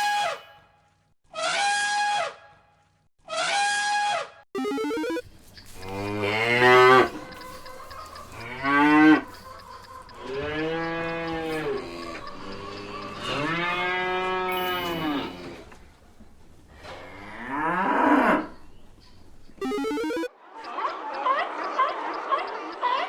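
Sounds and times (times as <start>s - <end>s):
cow mooing: 5.8s - 7.2s, 8.4s - 9.4s, 10.2s - 15.5s.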